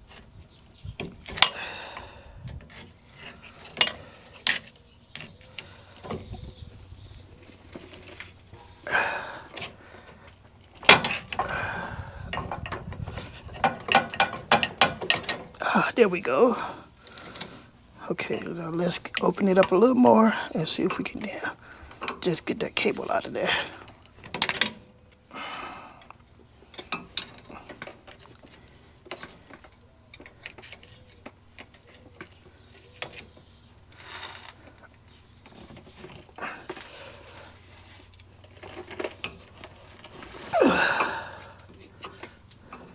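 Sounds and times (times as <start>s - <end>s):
scraping rustle: 2.5s - 8.9s, 26.7s - 42.9s.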